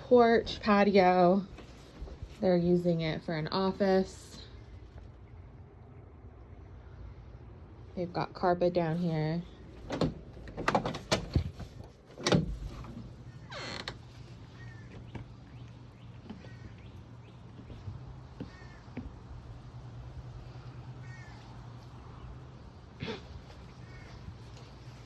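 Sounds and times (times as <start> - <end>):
steady low hum: 0.0 - 25.0
door knocking and clattering open: 9.8 - 12.8.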